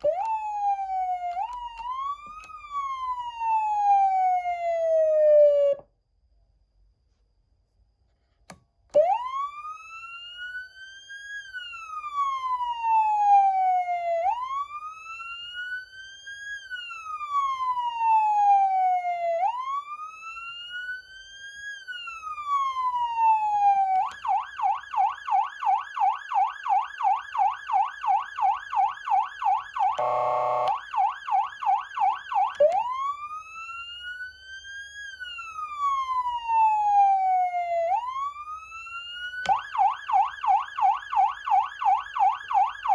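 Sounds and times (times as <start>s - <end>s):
electronic siren wail and yelp: 0.0s - 5.9s, 9.0s - 42.9s
buzzing air horn blast: 30.0s - 30.8s.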